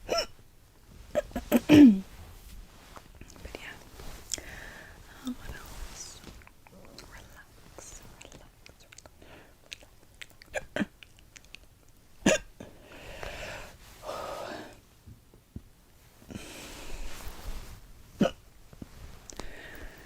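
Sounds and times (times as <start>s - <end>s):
girl hiccuping: 1.5s - 2.0s.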